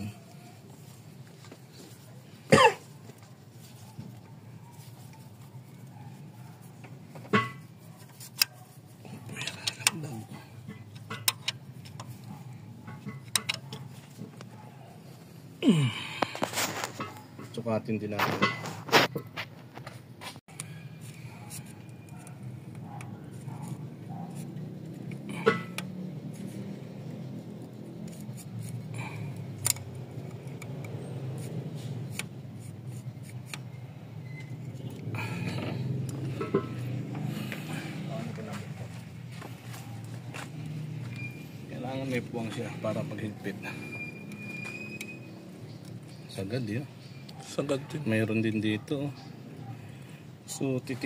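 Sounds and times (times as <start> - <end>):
small tools clicking and tapping: 9.3 - 14.5, 20.5 - 37.6
metal tools clattering: 18.2 - 19.3, 35.1 - 38.0.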